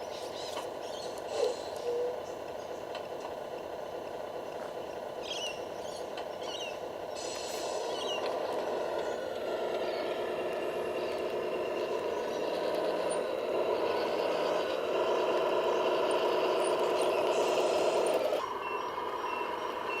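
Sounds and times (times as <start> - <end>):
electric motors whirring: 5.3 - 20.0.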